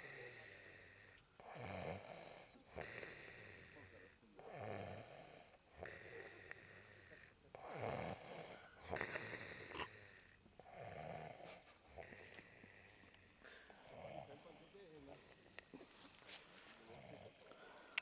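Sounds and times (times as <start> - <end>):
man snoring: 0.0 - 15.1, 16.8 - 18.0
breathy sounds: 5.4 - 18.0.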